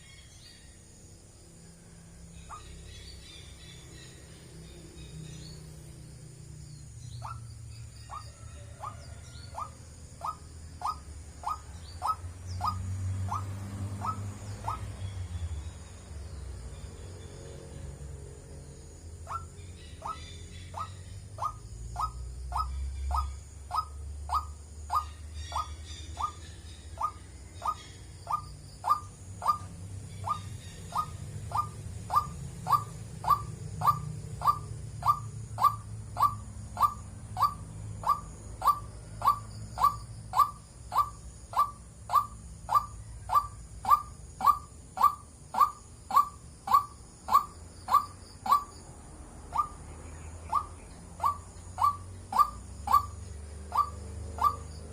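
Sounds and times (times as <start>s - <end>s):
waterhen calling: 50.4s - 54.7s.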